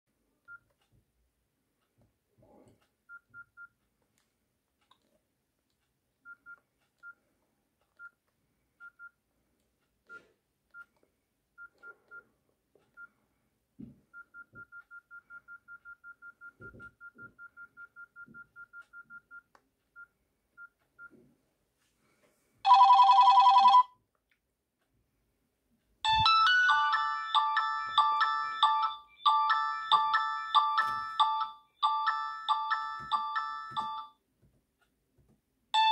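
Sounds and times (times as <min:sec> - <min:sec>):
phone ringtone: 0:22.7 - 0:24.0, 0:26.0 - 0:34.2.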